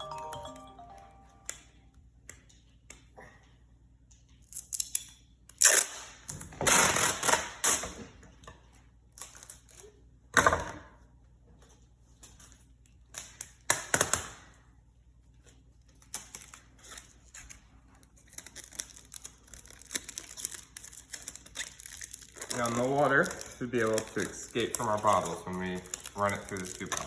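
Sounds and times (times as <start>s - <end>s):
adhesive tape pulled off: 4.6s - 7.9s
plastic crinkling: 15.9s - 27.0s.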